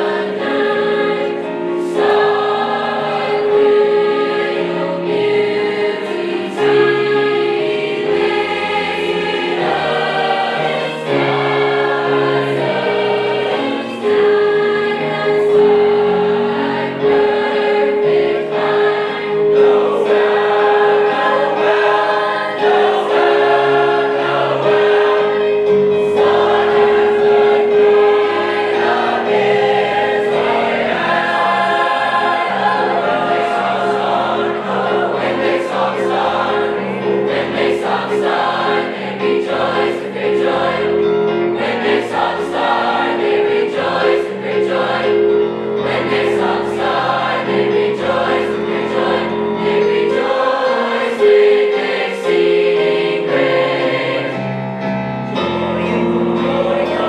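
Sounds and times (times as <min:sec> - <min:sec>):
choir singing: 0:00.0 - 0:57.0.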